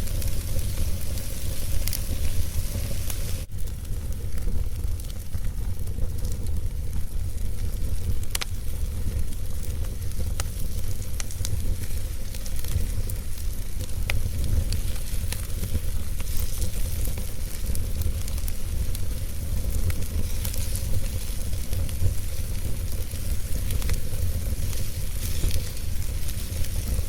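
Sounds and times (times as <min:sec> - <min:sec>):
fire crackles and pops: 0:00.0 - 0:27.0
steady low rumble: 0:00.0 - 0:27.0
wood fire hissing: 0:00.0 - 0:27.0.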